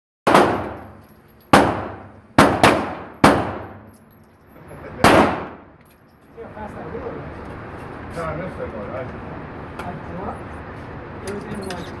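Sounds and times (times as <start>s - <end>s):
pistol shots ringing: 0.3s - 4.0s, 5.0s - 5.8s.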